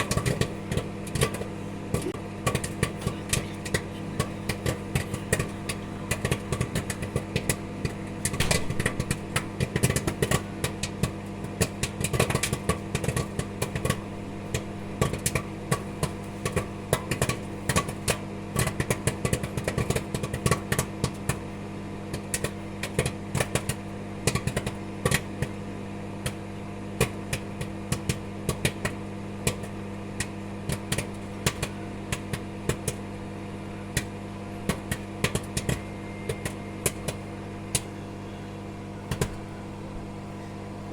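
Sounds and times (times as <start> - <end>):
microwave oven hum: 0.0 - 40.9
popcorn popping: 0.0 - 40.9.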